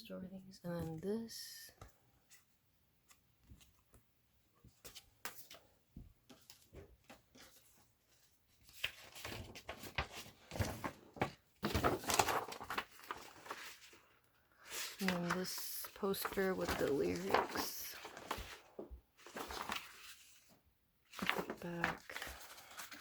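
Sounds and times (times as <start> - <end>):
paper rustling and crinkling: 4.6 - 23.0.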